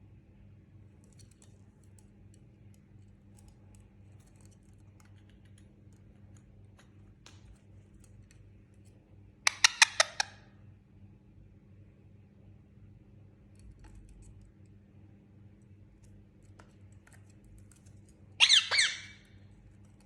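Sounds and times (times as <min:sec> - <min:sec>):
parakeet shrill calls: 0:18.4 - 0:19.3.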